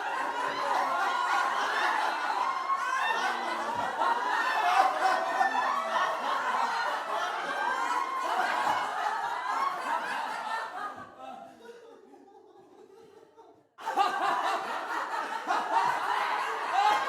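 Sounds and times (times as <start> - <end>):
group of people laughing: 0.0 - 17.0.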